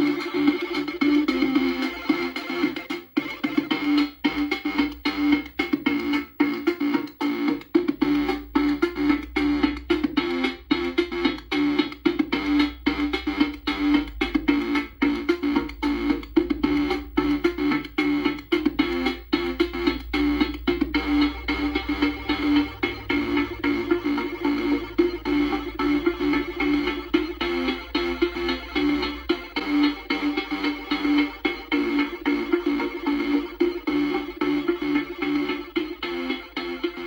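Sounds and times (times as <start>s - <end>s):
synth voices: 0.0s - 37.0s
deep bass line: 7.7s - 37.0s.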